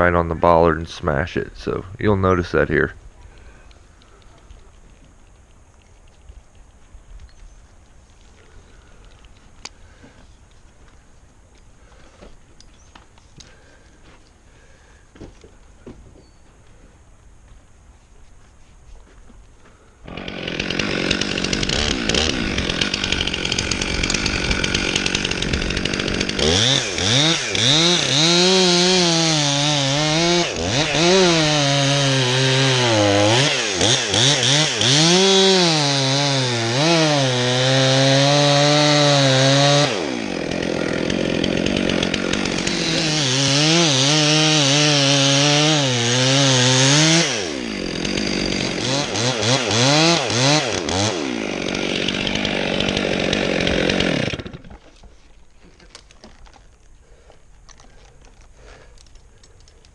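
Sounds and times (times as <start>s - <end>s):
chainsaw cutting tree trunk: 20.0s - 59.9s.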